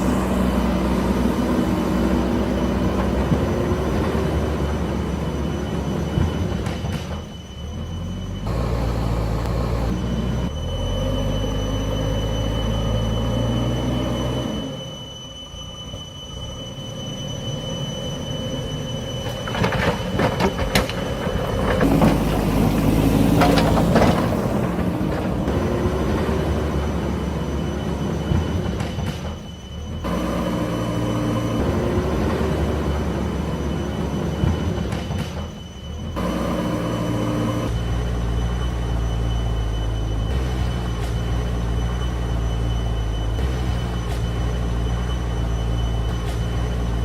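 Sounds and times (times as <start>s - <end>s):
diesel engine revving: 0.0s - 15.0s, 21.0s - 47.0s
thin high whine: 0.0s - 47.0s.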